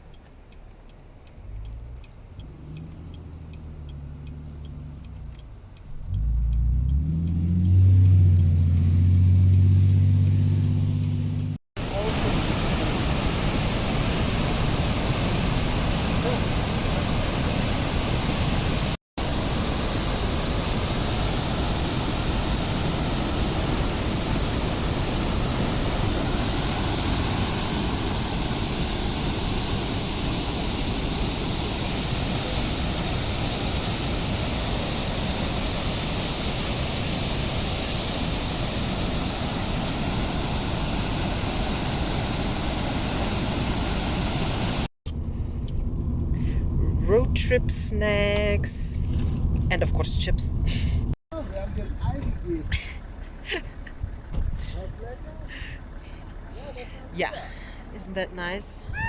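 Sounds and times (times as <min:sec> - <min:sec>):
rush of falling water: 0:11.8 - 0:44.9.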